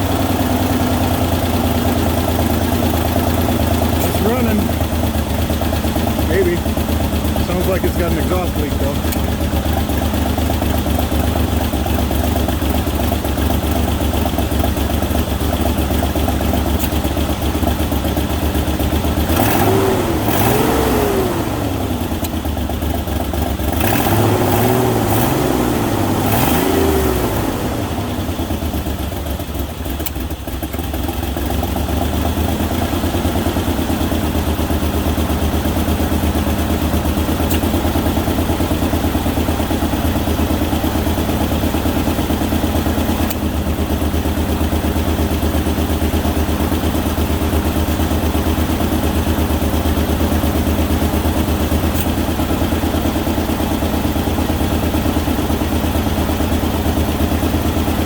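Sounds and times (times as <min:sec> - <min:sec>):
engine revving: 0:00.0 - 0:09.3, 0:18.8 - 0:22.3, 0:23.7 - 0:28.6
engine idling: 0:00.0 - 0:58.0.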